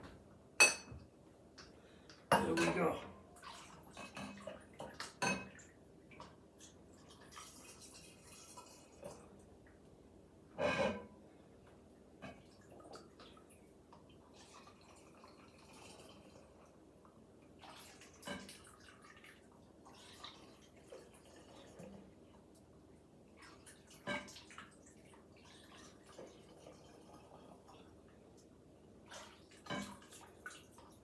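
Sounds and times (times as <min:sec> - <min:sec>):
clinks of glass and utensils: 0:00.6 - 0:01.0
liquid trickling and dripping: 0:11.7 - 0:31.0.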